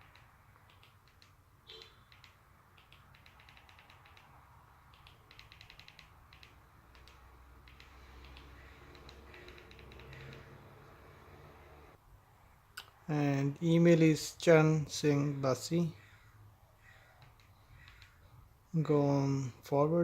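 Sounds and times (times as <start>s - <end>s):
buttons clicking: 0.0s - 10.6s, 17.2s - 18.2s.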